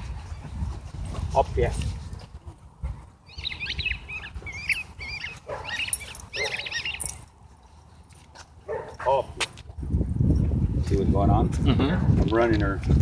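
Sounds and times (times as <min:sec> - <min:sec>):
dog whining and yelping: 0:03.2 - 0:07.2.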